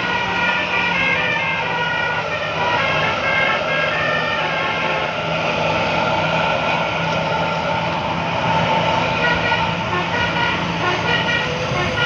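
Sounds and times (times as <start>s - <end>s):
multi-tone bus air horn: 0.0s - 5.3s, 7.2s - 7.7s, 9.0s - 12.0s
bus engine: 0.0s - 12.0s.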